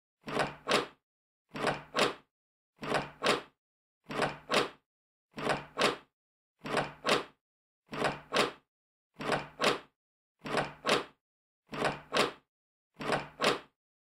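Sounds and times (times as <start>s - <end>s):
door opening sound effect: 4.1s - 8.6s.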